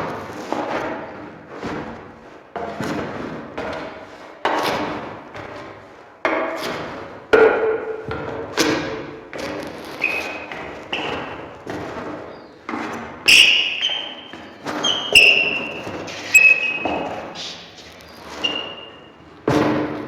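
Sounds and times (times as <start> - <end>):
footsteps on wooden floor: 8.0 - 19.6.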